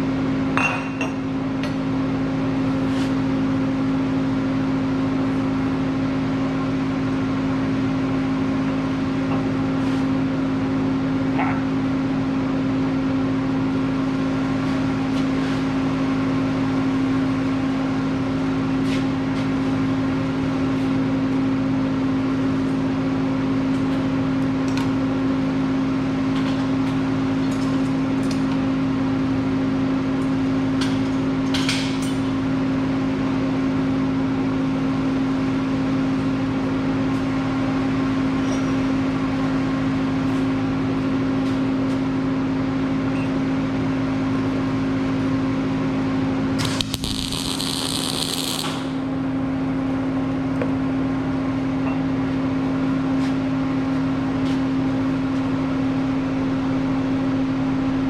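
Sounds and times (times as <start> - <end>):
steady machine hum: 46.2 - 50.5.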